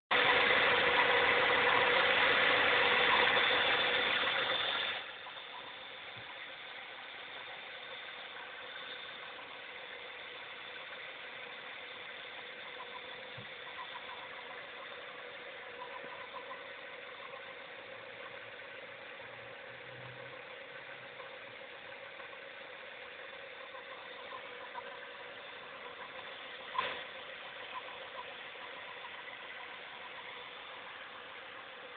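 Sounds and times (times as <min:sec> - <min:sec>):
car engine idling: 0:00.1 - 0:31.9
steady engine whine: 0:00.1 - 0:31.9.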